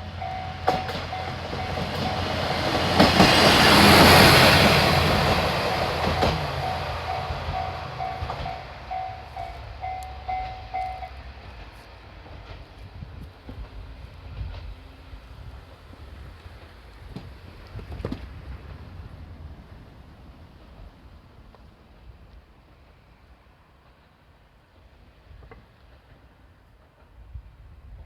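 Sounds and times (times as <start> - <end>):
crossing warning bell: 0.0 - 11.5
train passing: 0.0 - 28.0.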